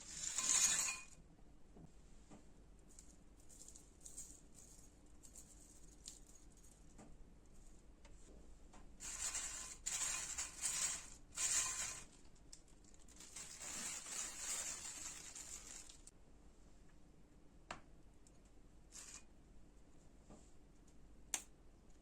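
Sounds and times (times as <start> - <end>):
rustling crinkling noise: 2.8 - 8.4, 9.0 - 16.1.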